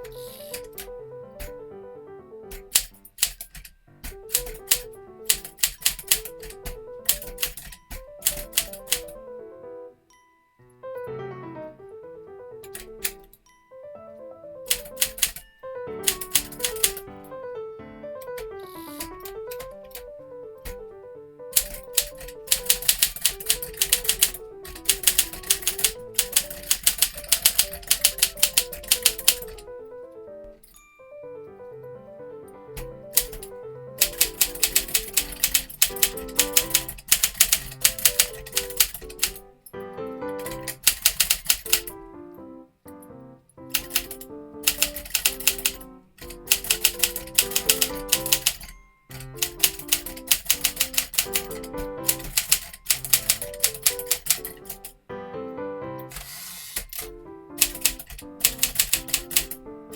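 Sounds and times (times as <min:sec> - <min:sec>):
typewriter keys clacking: 0:00.0 - 0:01.6, 0:02.5 - 0:09.2, 0:12.6 - 0:13.4, 0:14.7 - 0:17.4, 0:18.2 - 0:20.9, 0:21.5 - 0:29.8, 0:32.7 - 0:39.5, 0:40.2 - 0:42.0, 0:43.7 - 0:55.0, 0:56.0 - 0:59.7
light background music: 0:00.0 - 0:59.9.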